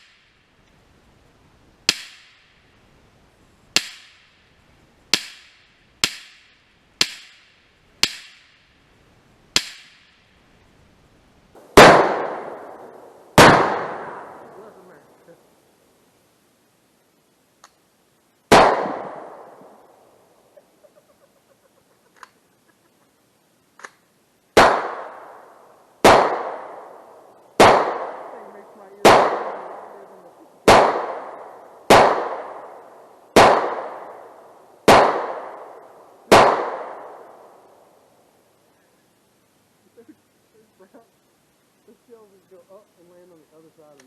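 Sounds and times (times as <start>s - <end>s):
rifle shots with echo: 11.6s - 15.0s, 18.5s - 20.0s, 24.6s - 37.6s
faint clicks: 17.6s - 17.8s, 22.0s - 23.1s.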